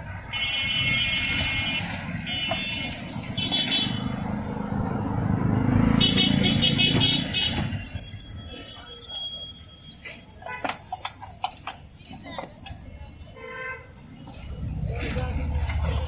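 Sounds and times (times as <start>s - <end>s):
car horn beeping: 0.3s - 4.2s, 5.8s - 8.0s, 10.4s - 10.9s, 13.3s - 14.0s
vehicle engine rumbling by: 3.2s - 7.9s, 14.1s - 16.0s.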